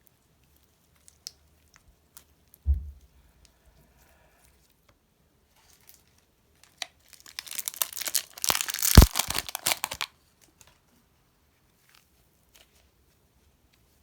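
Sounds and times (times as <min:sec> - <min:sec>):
slime crackling and crinkling: 0:06.6 - 0:10.1
heavy slime squish: 0:07.2 - 0:10.1.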